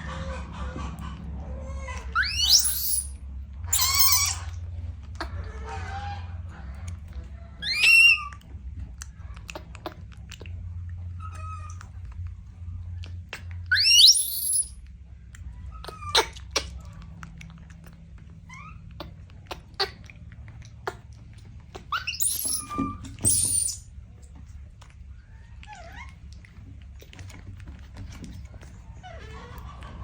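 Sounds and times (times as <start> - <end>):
baby monkey squealing: 2.0 - 4.6, 7.6 - 8.4, 13.7 - 14.8, 15.8 - 16.8, 21.7 - 23.8
monkey gliding calls: 2.2 - 3.1, 3.8 - 4.4, 7.6 - 8.3, 13.7 - 14.7, 21.8 - 23.8.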